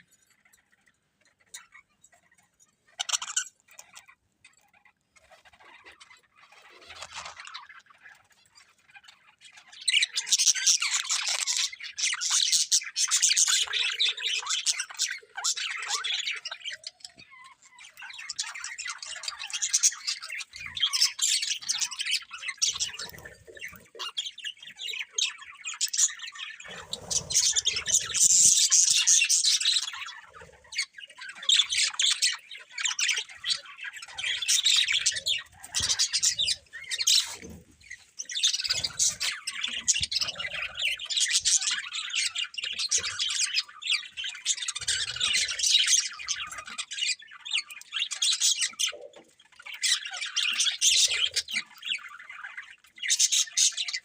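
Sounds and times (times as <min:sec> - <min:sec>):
budgies chirping and chattering: 0:00.0 - 0:54.0.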